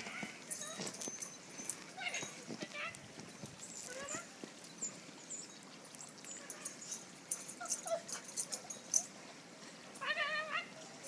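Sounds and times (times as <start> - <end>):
scuffling noises: 0.0 - 4.7
dog whimpering and yipping: 6.4 - 9.1.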